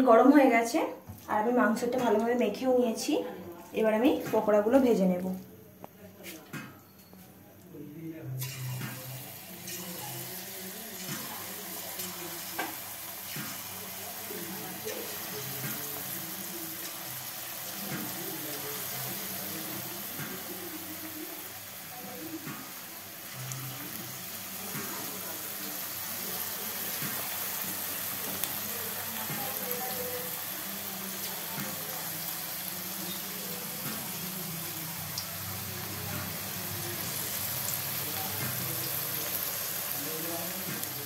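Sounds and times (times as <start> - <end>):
chicken frying in oil: 8.4 - 41.0.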